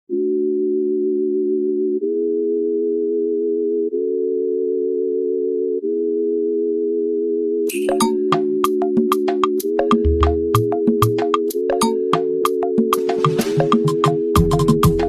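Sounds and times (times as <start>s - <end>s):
held steady chords: 7.7s - 15.0s.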